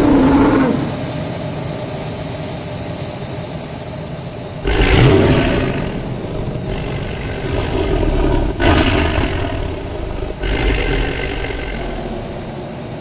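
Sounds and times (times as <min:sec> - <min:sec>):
monster growling roar: 0:00.0 - 0:01.0, 0:04.6 - 0:12.6.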